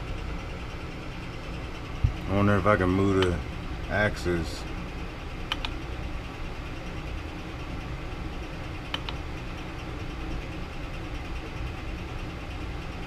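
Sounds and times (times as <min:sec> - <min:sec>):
printer hum: 0:00.0 - 0:13.0
control knob clicks: 0:05.5 - 0:05.8.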